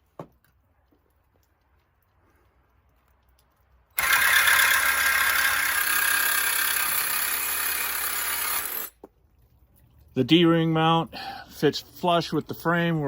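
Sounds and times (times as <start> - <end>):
power tool cutting steel: 4.0 - 8.9.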